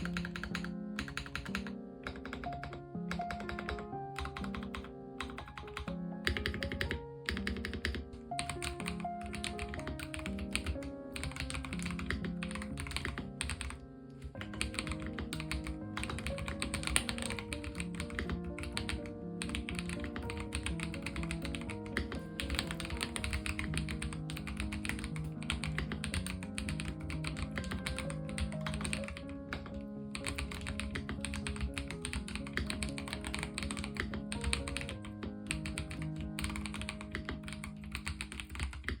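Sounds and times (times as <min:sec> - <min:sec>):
background music: 0:00.0 - 0:39.0
mechanical keyboard typing: 0:00.0 - 0:39.0.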